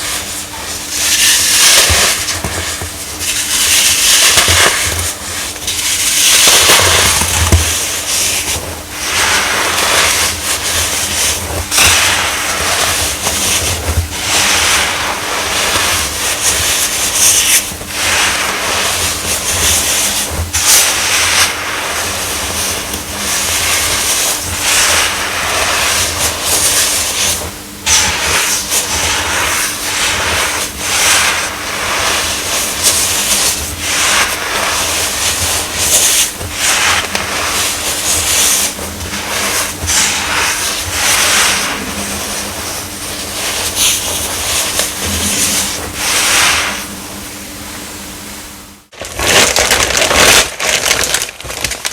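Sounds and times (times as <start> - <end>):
baking soda crunching: 0.0 - 47.0, 48.9 - 51.9.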